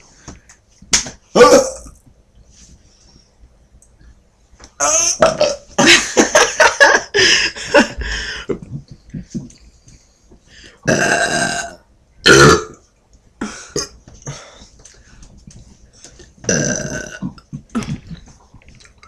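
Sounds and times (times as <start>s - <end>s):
loud burps: 1.4s - 2.0s, 4.8s - 5.7s, 10.8s - 12.8s, 16.5s - 18.2s.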